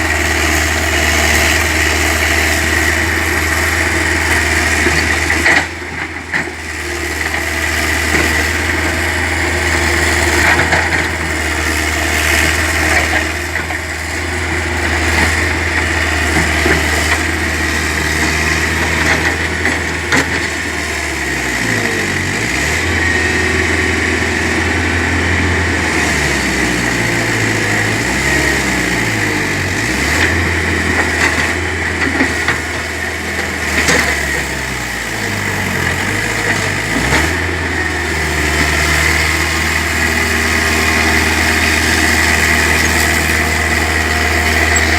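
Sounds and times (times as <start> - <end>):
excavator engine running: 0.0 - 44.9.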